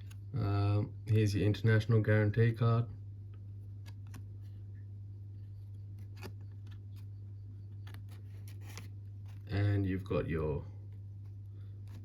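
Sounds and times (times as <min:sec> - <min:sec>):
steady low hum: 0:00.0 - 0:12.0
paper rustling: 0:07.7 - 0:09.5.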